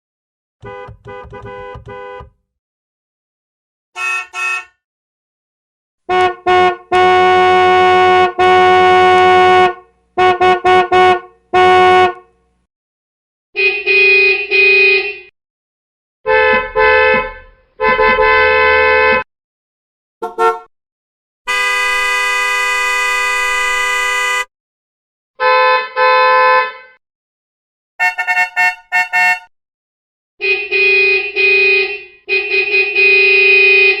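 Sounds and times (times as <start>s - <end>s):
car horns beeping and honking: 0.6s - 2.4s, 4.0s - 4.8s, 6.1s - 12.4s, 13.6s - 15.3s, 16.2s - 19.3s, 20.2s - 20.7s, 21.5s - 24.5s, 25.4s - 27.0s, 28.0s - 29.5s, 30.4s - 34.0s.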